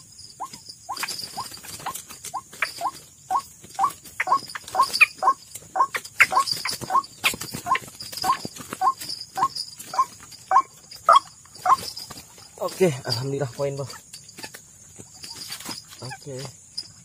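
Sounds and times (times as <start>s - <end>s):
waterhen calling harsh notes: 2.3s - 11.9s.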